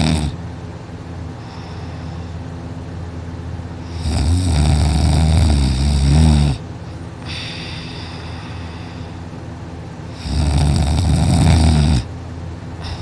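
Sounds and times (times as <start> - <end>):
person snoring: 0.0 - 0.4, 3.9 - 6.6, 7.2 - 9.2, 10.1 - 12.1
quiet breathing: 1.4 - 2.6, 6.9 - 9.4, 12.8 - 13.0.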